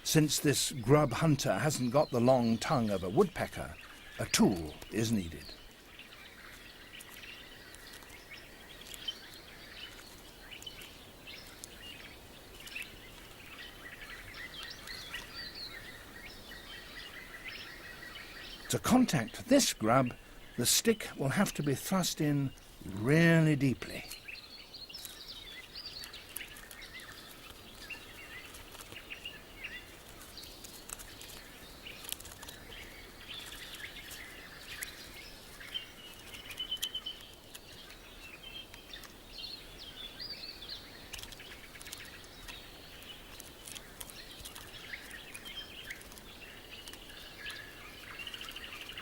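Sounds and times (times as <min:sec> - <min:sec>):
small birds chirping: 0:00.0 - 0:49.0
soft steady hiss: 0:00.0 - 0:49.0
faint clicks: 0:41.0 - 0:47.6.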